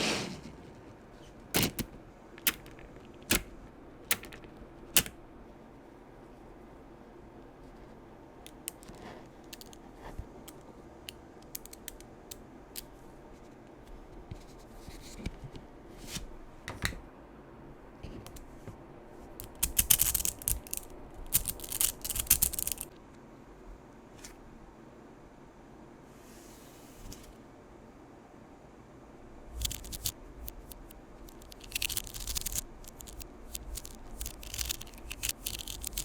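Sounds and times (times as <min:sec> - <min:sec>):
magnetic balls clicking together: 0:01.6 - 0:05.2, 0:08.5 - 0:09.8, 0:10.4 - 0:12.9, 0:19.4 - 0:22.9, 0:29.6 - 0:36.0.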